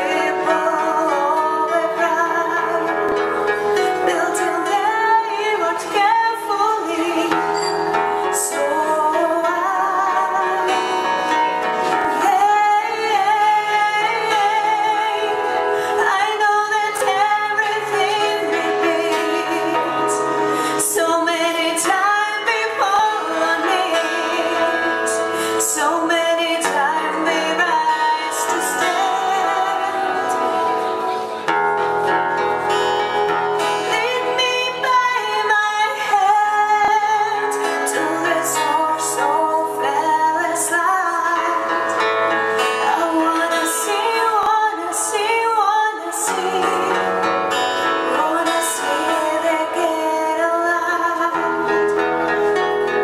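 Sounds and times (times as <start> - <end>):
woman singing: 0.0 - 53.0
rock band playing live: 7.3 - 16.3.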